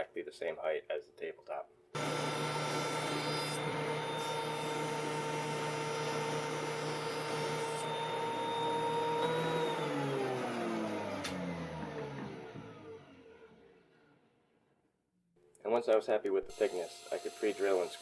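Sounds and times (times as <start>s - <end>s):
electric hand planer running: 2.0s - 13.8s.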